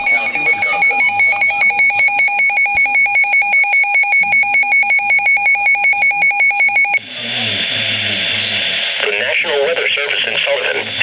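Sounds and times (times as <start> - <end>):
pulsing two-pitch electronic beep: 0.0 - 7.0.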